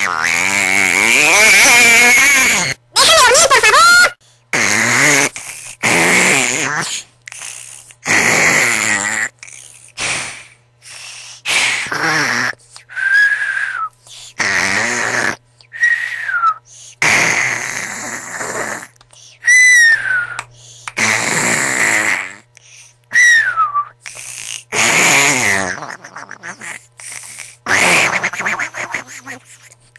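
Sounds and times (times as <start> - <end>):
person snoring loudly: 0.0 - 2.8, 4.5 - 10.6, 11.5 - 16.2, 16.9 - 22.9, 24.0 - 29.5
falling whistle: 19.5 - 20.4, 23.1 - 23.9.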